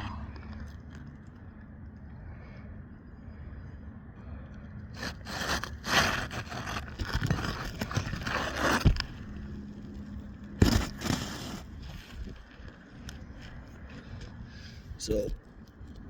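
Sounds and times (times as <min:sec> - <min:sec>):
shingles being scraped: 0:05.0 - 0:09.5, 0:10.6 - 0:12.4.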